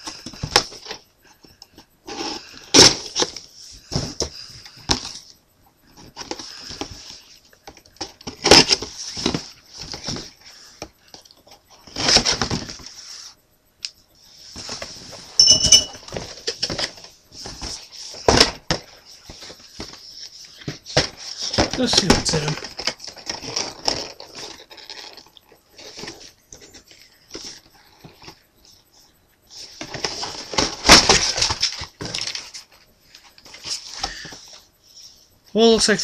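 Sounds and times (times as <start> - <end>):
plastic bags crinkling: 21.3 - 26.4.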